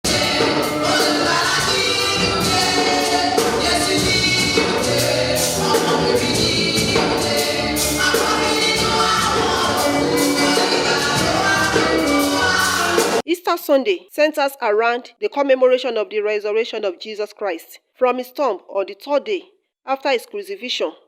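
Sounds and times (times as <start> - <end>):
choir singing: 0.0 - 13.2
instrumental accompaniment with beat: 0.0 - 13.2.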